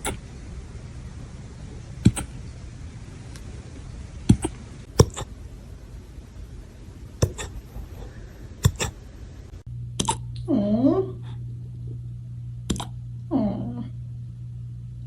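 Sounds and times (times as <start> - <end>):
puppy hiccuping: 7.2 - 9.0.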